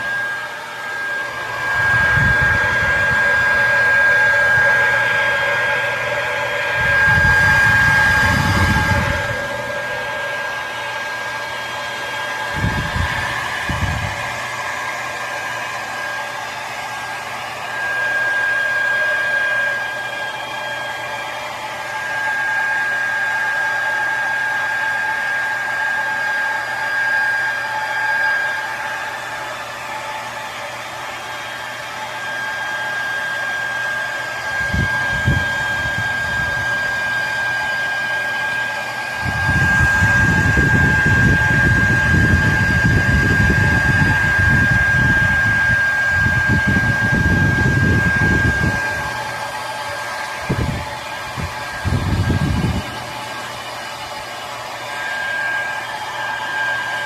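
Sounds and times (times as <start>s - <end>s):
hair dryer running: 0.0s - 57.0s
gusty low rumble: 1.5s - 3.6s, 6.4s - 10.1s, 50.4s - 53.0s.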